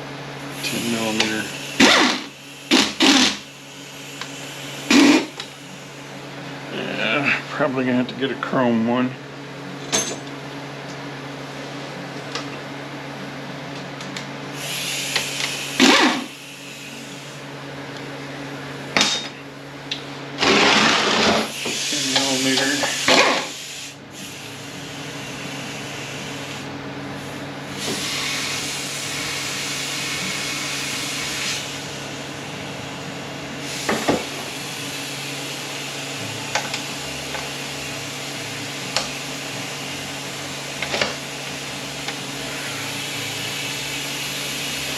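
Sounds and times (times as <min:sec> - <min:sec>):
noisy tool work: 0:00.0 - 0:08.1, 0:13.7 - 0:17.5, 0:18.9 - 0:44.9
steady shop hum: 0:00.0 - 0:44.9.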